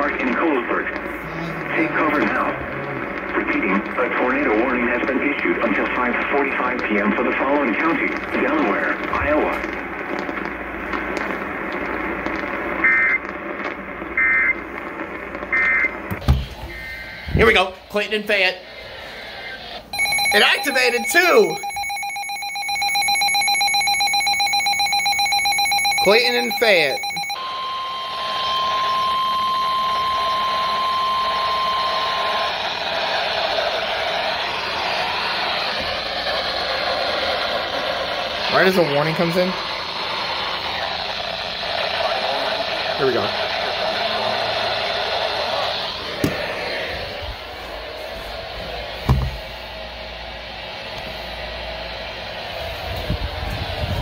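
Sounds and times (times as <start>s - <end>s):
radio static hissing: 0.0s - 21.7s, 26.0s - 54.0s
steady warning alarm tone: 15.5s - 17.6s, 19.9s - 33.9s
warbling two-pitch data bursts: 19.9s - 32.5s.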